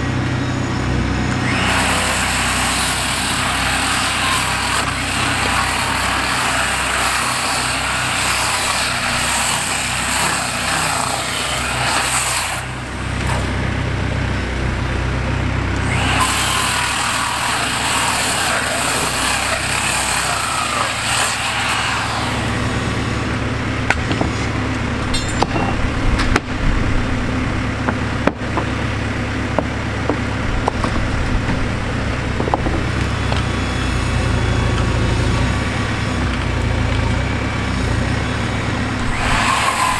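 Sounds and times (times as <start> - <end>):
backhoe engine running: 0.0 - 39.9
timber cracking: 1.3 - 13.9, 15.7 - 39.9
wooden deck creaking: 15.8 - 39.9.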